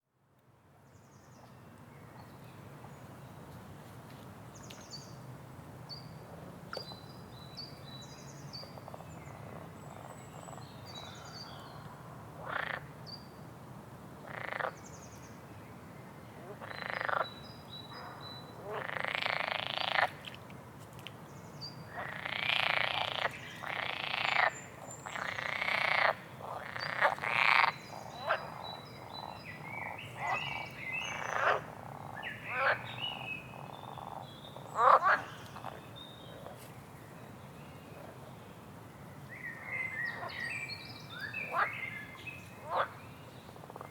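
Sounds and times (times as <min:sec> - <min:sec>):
frogs croaking: 0:08.7 - 0:11.4, 0:12.4 - 0:12.9, 0:14.2 - 0:14.8, 0:16.4 - 0:17.4, 0:18.0 - 0:20.2, 0:21.9 - 0:36.5, 0:41.2 - 0:41.9, 0:42.6 - 0:43.0.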